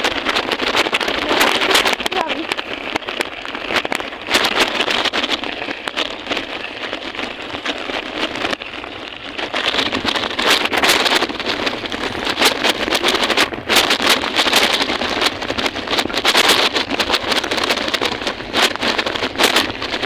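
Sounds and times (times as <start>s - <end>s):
bicycle rattling clicks: 0.0s - 20.0s
wind buffeting microphone: 0.0s - 20.0s.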